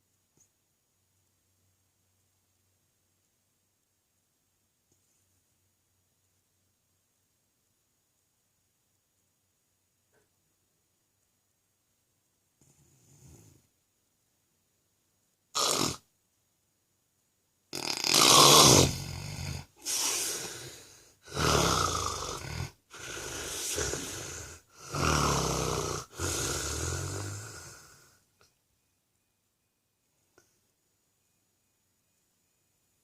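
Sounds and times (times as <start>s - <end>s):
man snoring: 15.6s - 16.0s, 17.7s - 28.2s.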